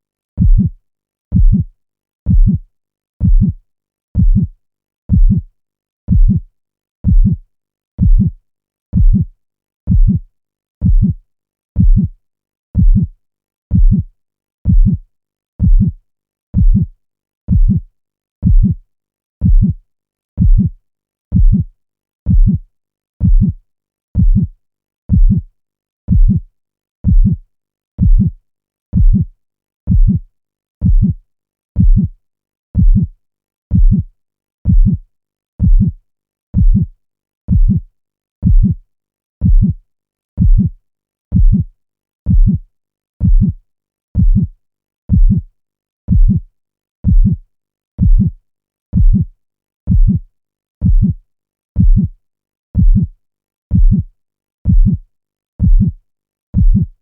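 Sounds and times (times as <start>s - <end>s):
deep heartbeat thumps: 0.4s - 0.7s, 1.3s - 1.7s, 2.3s - 2.6s, 3.2s - 3.6s, 4.2s - 4.5s, 5.1s - 5.4s, 6.1s - 6.4s, 7.0s - 7.4s, 8.0s - 8.3s, 9.0s - 9.2s, 9.9s - 10.2s, 10.8s - 11.2s, 11.8s - 12.1s, 12.8s - 13.1s, 13.7s - 14.0s, 14.7s - 15.0s, 15.6s - 16.0s, 16.6s - 16.9s, 17.5s - 17.8s, 18.4s - 18.8s, 19.4s - 19.8s, 20.4s - 20.7s, 21.3s - 21.6s, 22.3s - 22.6s, 23.2s - 23.6s, 24.2s - 24.5s, 25.1s - 25.4s, 26.1s - 26.4s, 27.0s - 27.4s, 28.0s - 28.3s, 29.0s - 29.2s, 29.9s - 30.2s, 30.8s - 31.2s, 31.8s - 32.1s, 32.8s - 33.1s, 33.7s - 34.0s, 34.7s - 35.0s, 35.6s - 36.0s, 36.6s - 36.8s, 37.5s - 37.8s, 38.4s - 38.8s, 39.4s - 39.8s, 40.4s - 40.7s, 41.3s - 41.6s, 42.3s - 42.6s, 43.2s - 43.6s, 44.2s - 44.5s, 45.1s - 45.4s, 46.1s - 46.4s, 47.0s - 47.4s, 48.0s - 48.3s, 49.0s - 49.2s, 49.9s - 50.2s, 50.8s - 51.1s, 51.8s - 52.1s, 52.8s - 53.1s, 53.7s - 54.0s, 54.7s - 55.0s, 55.6s - 55.9s, 56.6s - 56.8s.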